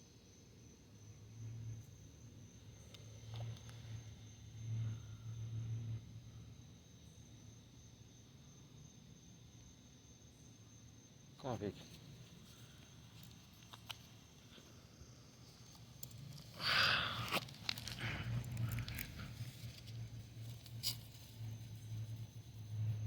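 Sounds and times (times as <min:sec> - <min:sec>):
low steady hum: 0:11.7 - 0:23.0
scattered crackles: 0:15.6 - 0:21.6.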